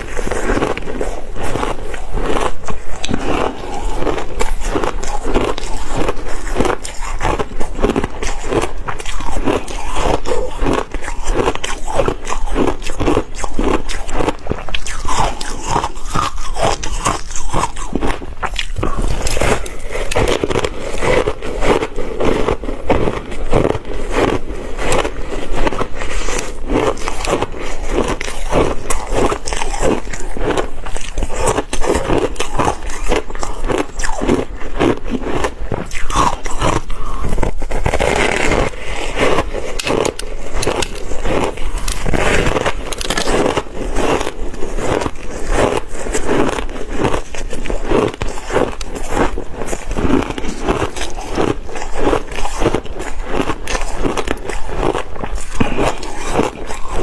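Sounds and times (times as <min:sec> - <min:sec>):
ice being chewed: 0:00.0 - 0:57.0.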